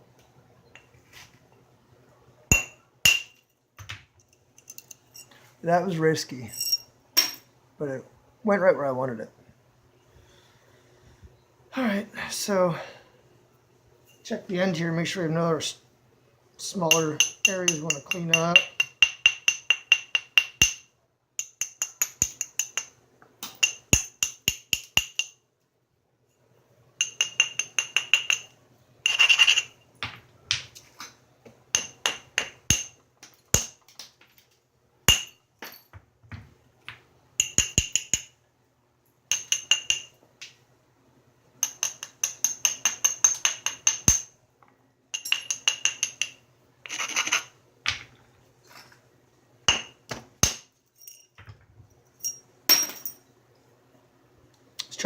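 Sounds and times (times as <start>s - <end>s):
stone hammer tapping stone: 2.5s - 4.0s, 16.9s - 20.8s, 21.4s - 25.4s, 27.0s - 28.5s, 31.8s - 34.2s, 35.1s - 38.4s, 39.3s - 40.6s, 41.6s - 44.3s, 45.2s - 46.4s, 49.7s - 50.7s.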